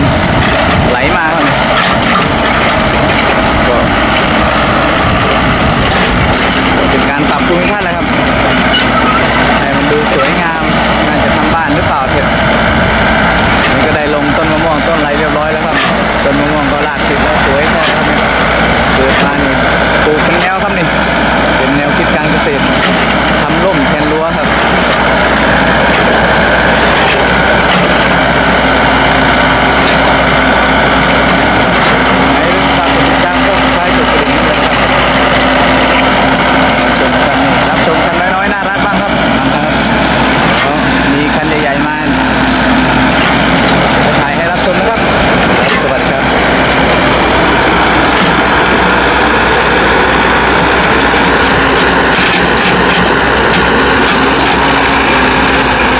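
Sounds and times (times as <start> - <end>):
excavator diesel engine running: 0.0 - 55.9
mechanical clatter: 0.4 - 10.8, 50.6 - 55.9.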